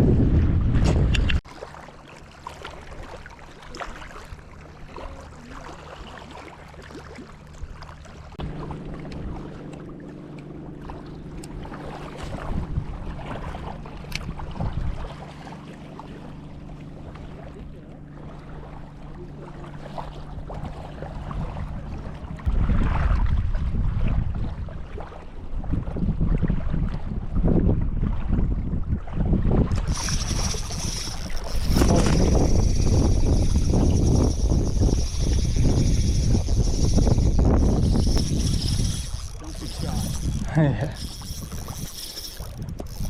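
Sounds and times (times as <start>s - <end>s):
wind buffeting microphone: 0.0s - 1.4s, 11.0s - 15.2s, 20.3s - 43.0s
boat motor humming: 1.0s - 22.5s, 29.7s - 43.0s.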